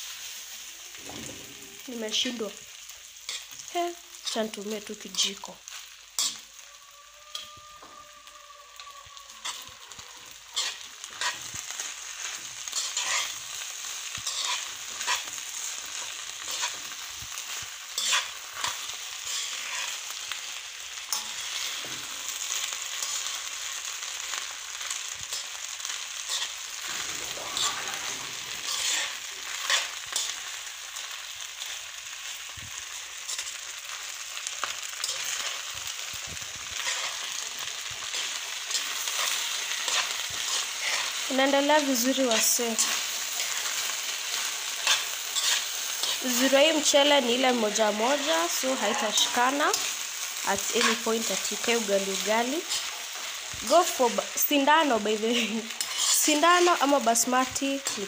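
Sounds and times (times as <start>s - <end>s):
rice sizzling in a pan: 0.0s - 58.0s
spoon scraping and knocking pan: 10.6s - 20.0s, 25.2s - 30.4s, 55.3s - 56.8s.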